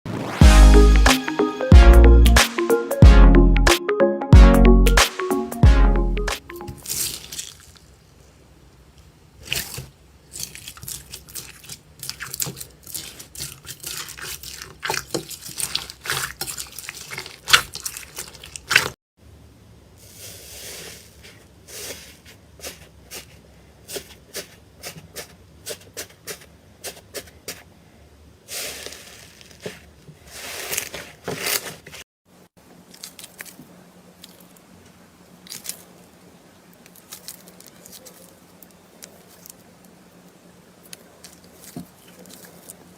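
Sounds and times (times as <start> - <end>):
slime squelching and popping: 9.4 - 19.0.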